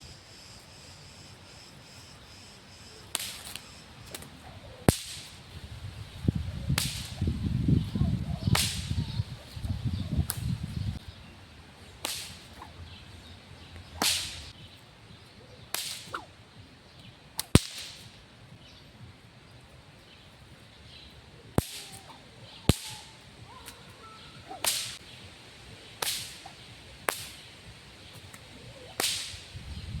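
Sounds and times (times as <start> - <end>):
whip cracking: 2.9 - 5.6, 6.3 - 10.7, 12.0 - 13.0, 13.8 - 14.6, 15.7 - 16.4, 17.3 - 18.2, 21.5 - 25.2, 26.0 - 29.7.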